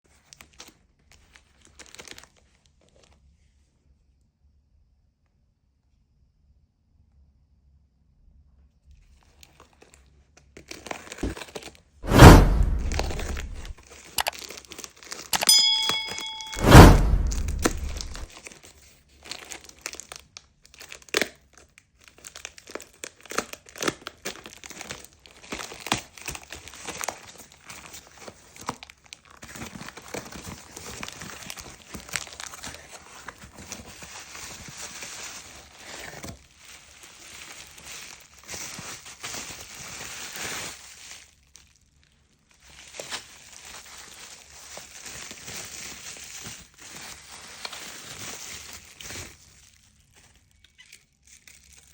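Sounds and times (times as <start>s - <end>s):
packaging crinkling and rustling: 0.2s - 2.4s, 19.2s - 51.9s.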